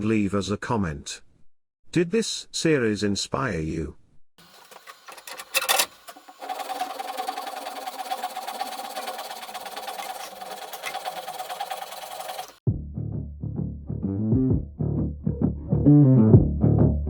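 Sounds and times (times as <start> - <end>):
machine running with fine rattle: 4.4 - 12.6.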